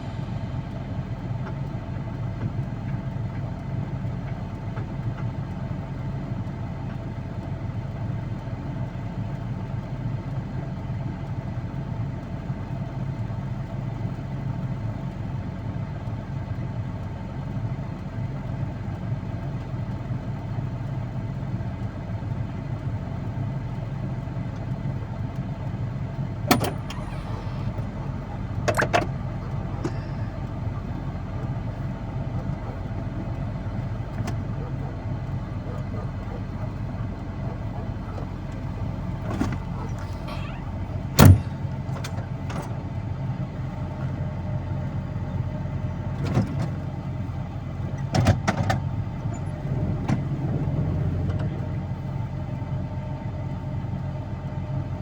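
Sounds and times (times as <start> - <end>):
machine engine droning: 19.3 - 48.2, 48.8 - 54.7.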